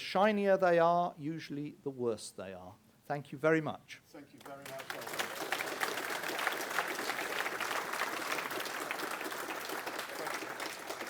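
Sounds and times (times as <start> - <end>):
audience applauding: 4.4 - 11.0.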